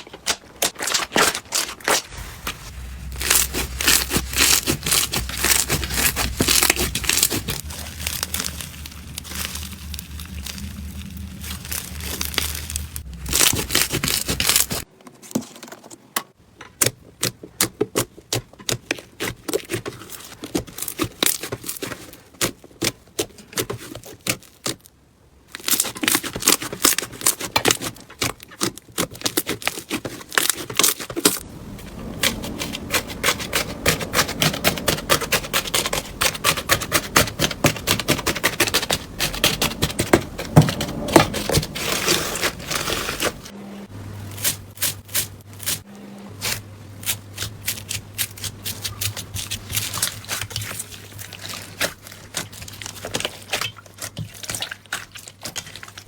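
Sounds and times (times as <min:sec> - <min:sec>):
slime clicking and crackling: 0:03.1 - 0:14.9, 0:25.6 - 0:31.4, 0:32.1 - 0:43.4, 0:46.4 - 0:56.0.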